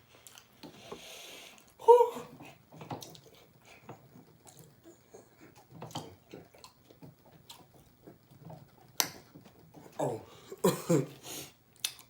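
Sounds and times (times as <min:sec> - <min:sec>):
chewing crispy fried food: 0:02.4 - 0:09.0, 0:11.7 - 0:12.0.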